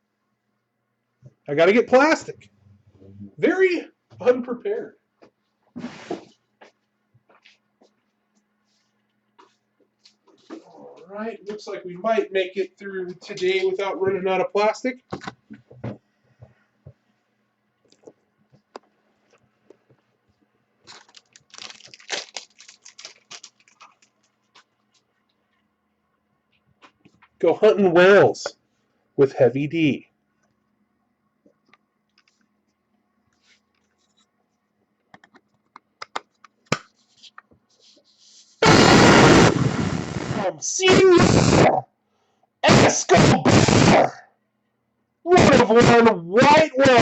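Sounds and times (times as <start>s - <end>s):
plastic packaging crinkling: 20.8s - 25.0s
trading cards and plastic handled: 20.8s - 25.4s.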